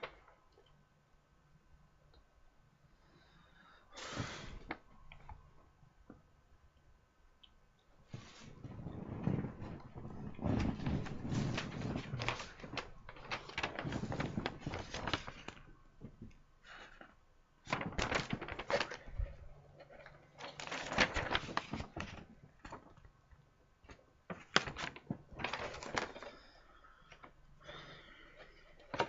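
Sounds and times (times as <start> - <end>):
paper and plastic packaging rustling: 8.1 - 23.1, 23.9 - 29.0.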